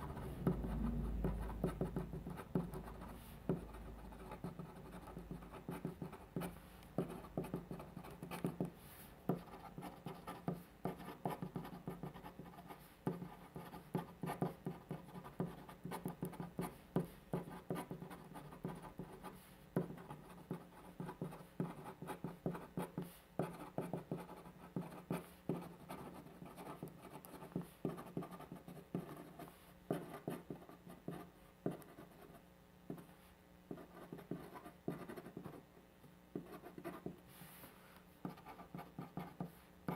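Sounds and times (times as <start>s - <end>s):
pen writing on paper: 19.8s - 32.2s, 33.7s - 35.6s.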